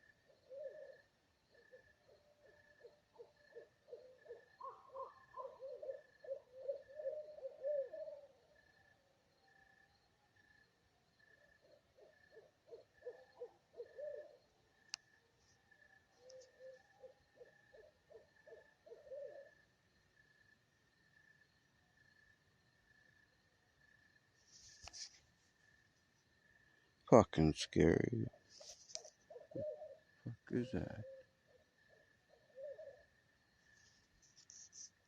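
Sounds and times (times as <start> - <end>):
faint high tone: 30.3 - 31.0.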